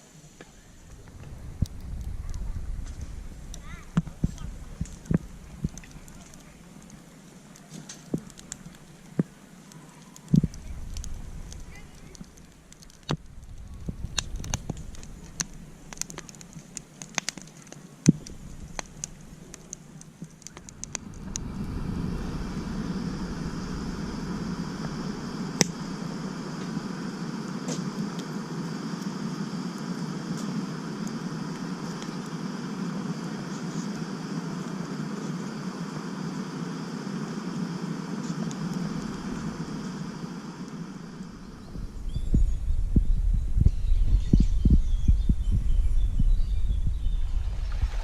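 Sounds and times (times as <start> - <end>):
steady rushing noise: 0.0 - 7.0, 18.0 - 48.0
wood fire crackling and popping: 0.3 - 45.1.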